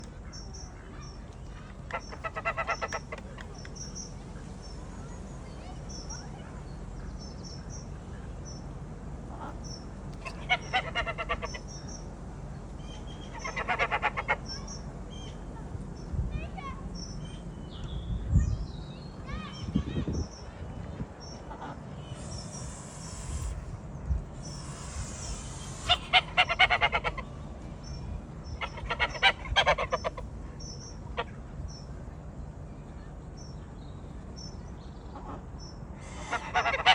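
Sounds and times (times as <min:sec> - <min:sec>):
small birds high chirps: 0:00.0 - 0:08.8, 0:09.5 - 0:36.7
birds fast repeated calls: 0:00.1 - 0:08.6, 0:09.2 - 0:12.2, 0:12.8 - 0:16.1, 0:17.0 - 0:31.9, 0:34.4 - 0:36.9
waterfowl honking: 0:01.9 - 0:03.2, 0:10.2 - 0:11.6, 0:13.3 - 0:14.5, 0:24.6 - 0:27.4, 0:28.5 - 0:30.2, 0:36.0 - 0:36.9
small bird chirping: 0:22.0 - 0:23.7, 0:24.4 - 0:26.6.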